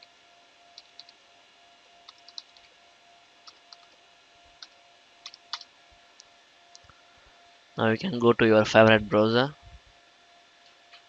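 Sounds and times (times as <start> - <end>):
faint steady hum: 0.0 - 11.0
keyboard keys clicking: 2.1 - 2.7, 4.6 - 5.7.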